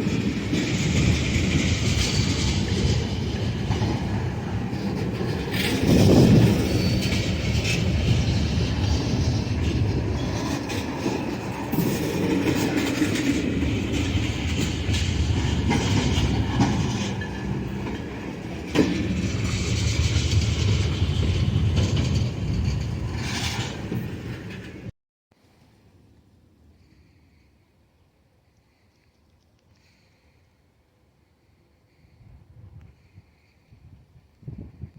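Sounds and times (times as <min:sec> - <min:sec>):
train rumbling: 0:00.0 - 0:24.9
train wheels clacking: 0:00.0 - 0:24.9.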